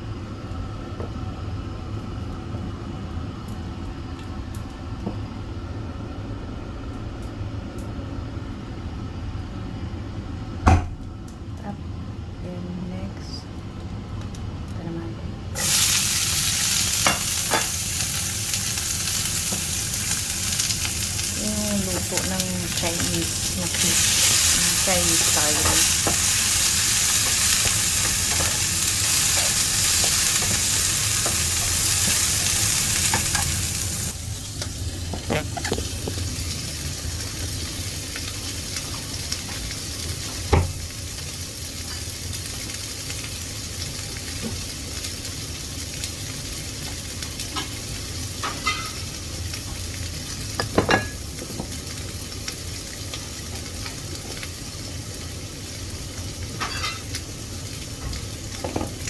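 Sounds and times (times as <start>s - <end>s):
food sizzling in hot oil: 15.6s - 59.0s.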